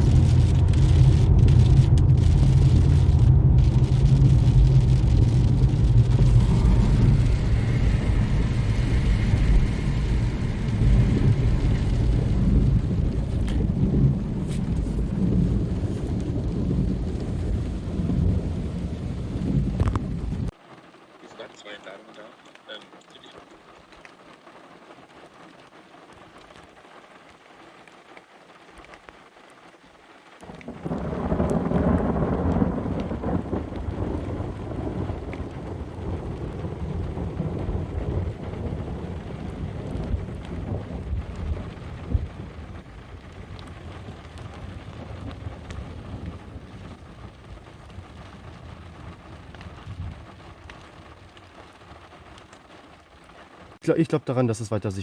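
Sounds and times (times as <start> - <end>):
sharp thunder crack: 0.0 - 20.5, 30.5 - 46.8
thunder rumbling: 0.0 - 20.6, 30.4 - 53.3
steady rain: 0.0 - 55.0.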